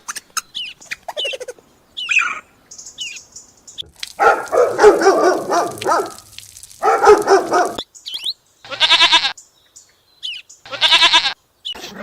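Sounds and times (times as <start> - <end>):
livestock bleating: 8.6 - 9.4, 10.6 - 11.4.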